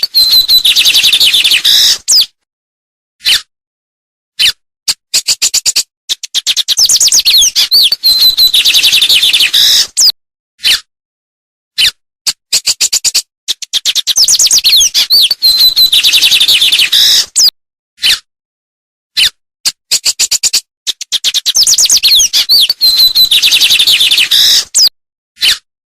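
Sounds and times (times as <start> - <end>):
songbird singing: 0.0 - 2.3, 6.4 - 9.9, 13.8 - 17.3, 21.1 - 24.9.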